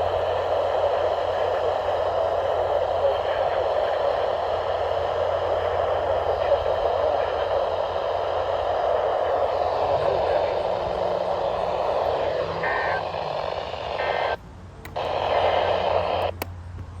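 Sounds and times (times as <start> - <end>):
low hum: 0.0 - 17.0
radio static hiss: 0.0 - 17.0
click: 14.8 - 15.1, 16.2 - 16.9.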